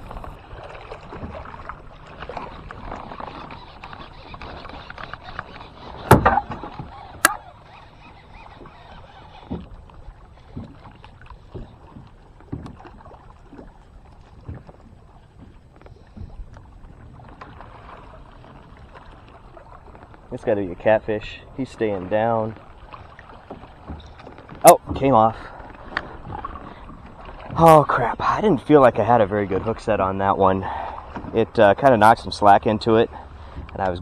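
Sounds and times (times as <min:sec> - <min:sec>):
water lapping against kayak hull: 0:00.0 - 0:34.0
knocks on boat: 0:06.1 - 0:06.6
sharp click: 0:07.2 - 0:07.4.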